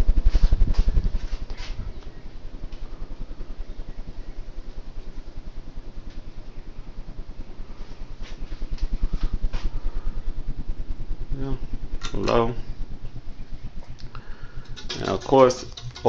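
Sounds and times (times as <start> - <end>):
ceiling fan whooshing: 0.0 - 16.0.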